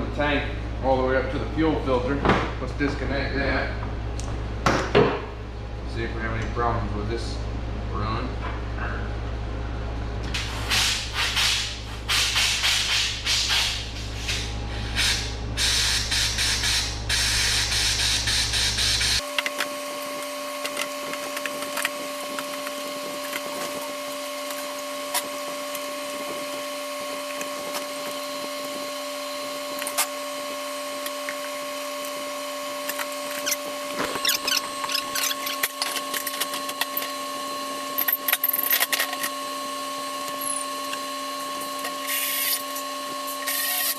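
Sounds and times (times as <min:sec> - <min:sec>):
steady hum: 0:00.0 - 0:43.9.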